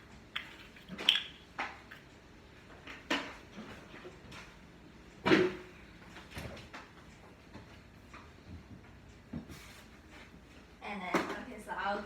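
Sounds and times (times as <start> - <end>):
kitchen knocks and clunks: 5.2 - 5.7.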